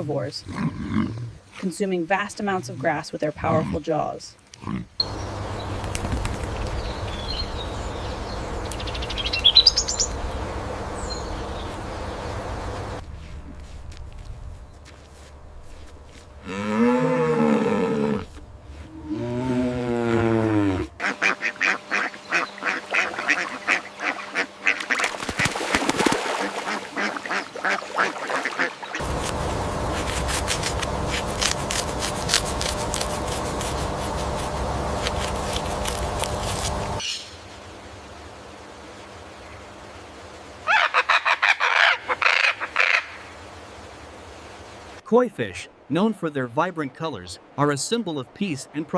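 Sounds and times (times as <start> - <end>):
noisy rustle with clicks: 5.7 - 6.8
duck-like quacking calls: 21.0 - 25.5, 26.6 - 29.0, 40.7 - 43.2.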